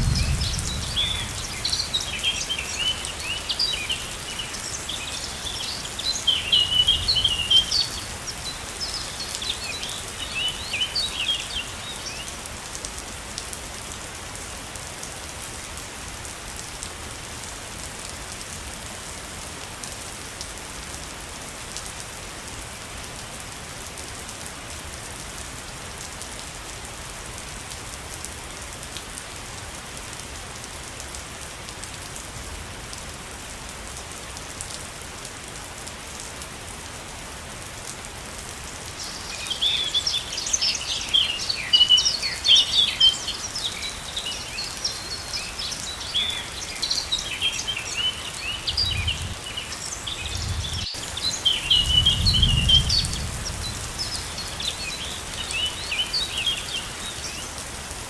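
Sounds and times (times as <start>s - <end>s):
birds chirping: 0.0s - 12.4s, 38.9s - 57.8s
waterfall hissing: 0.0s - 12.7s, 38.6s - 57.8s.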